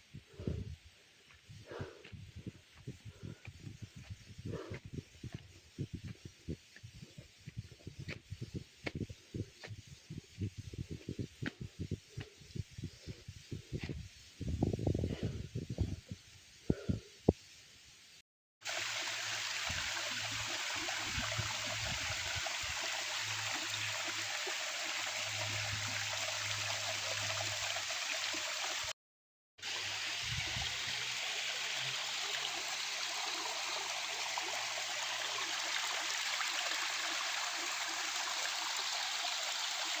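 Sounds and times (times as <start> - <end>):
stream water rushing: 29.6 - 40.0.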